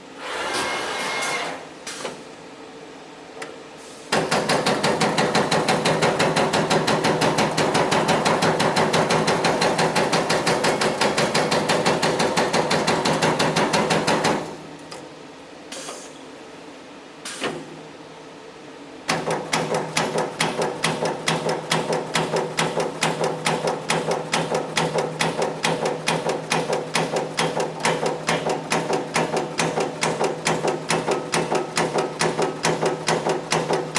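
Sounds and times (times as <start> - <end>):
punch press ram striking: 19.1 - 33.9.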